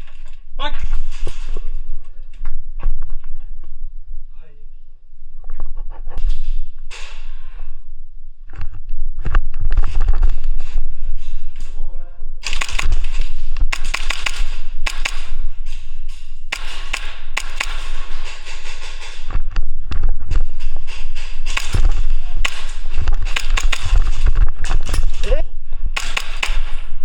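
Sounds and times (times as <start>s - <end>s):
low rumbling noise: 0.0s - 27.0s
rustling: 5.4s - 27.0s
airsoft guns firing: 12.4s - 27.0s.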